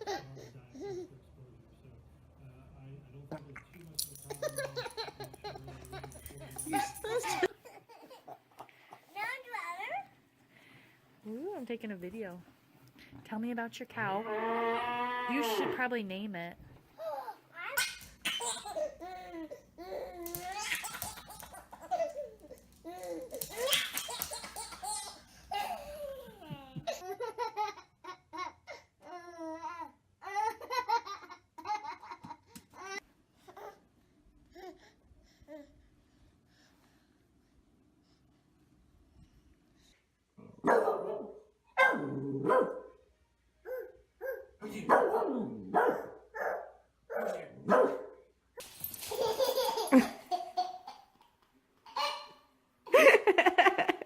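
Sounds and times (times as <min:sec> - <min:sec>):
baby laughing: 0:04.3 - 0:08.7, 0:17.0 - 0:28.8, 0:29.6 - 0:33.0, 0:48.9 - 0:54.0
dog barking: 0:40.6 - 0:43.0, 0:43.7 - 0:48.2.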